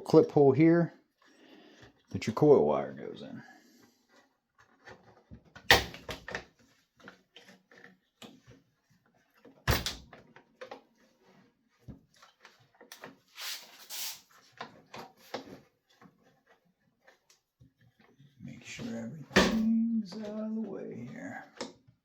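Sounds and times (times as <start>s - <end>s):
plastic parts clicking and knocking: 4.1s - 8.6s
scraping rustle: 10.8s - 21.6s.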